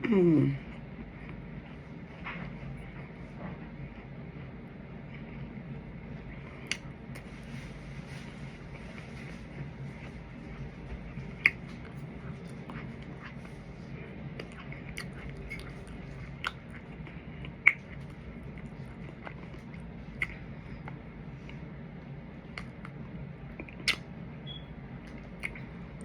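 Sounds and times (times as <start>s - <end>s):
low hum: 0.0s - 26.0s
chewing and eating: 0.6s - 24.2s, 24.9s - 26.0s
sharp mouth clicks and smacks: 6.6s - 6.9s, 11.4s - 12.0s, 14.4s - 18.2s, 19.1s - 20.4s, 22.5s - 23.0s, 23.6s - 24.1s, 25.1s - 26.0s.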